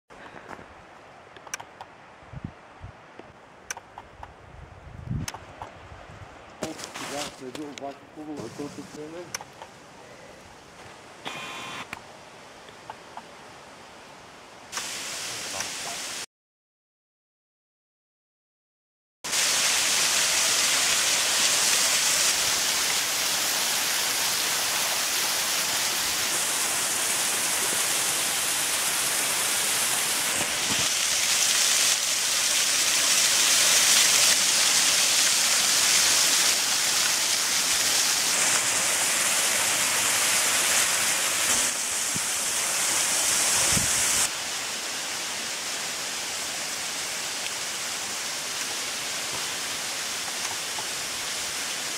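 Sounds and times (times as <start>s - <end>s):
small waterfall splashing: 14.7s - 16.3s, 19.3s - 51.9s.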